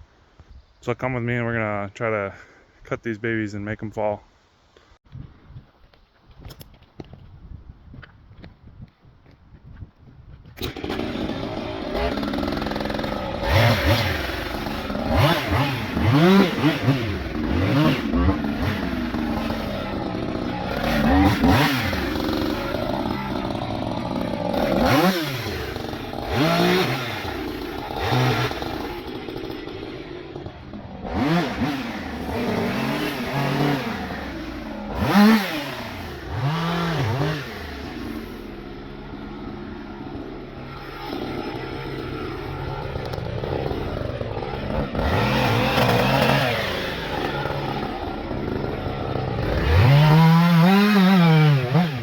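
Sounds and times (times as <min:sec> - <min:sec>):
chainsaw engine revving: 0:10.6 - 0:52.0.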